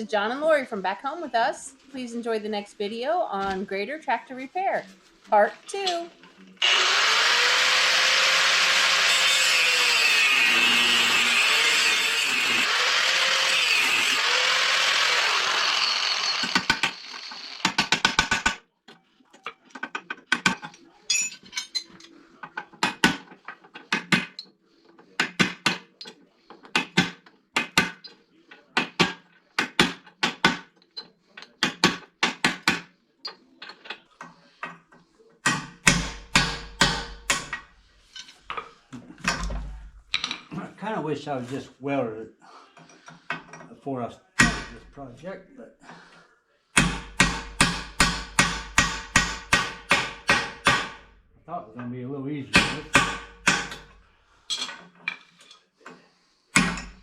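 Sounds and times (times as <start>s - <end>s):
power tool running: 6.6s - 17.9s.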